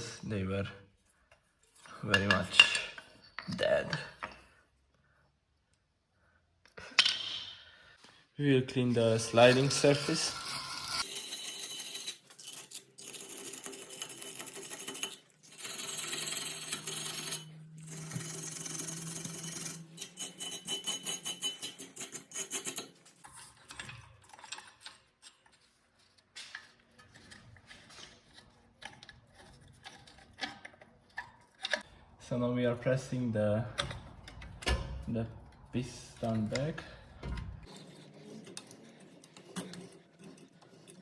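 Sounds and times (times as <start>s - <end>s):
scrubbing metal surfaces: 1.5s - 4.4s.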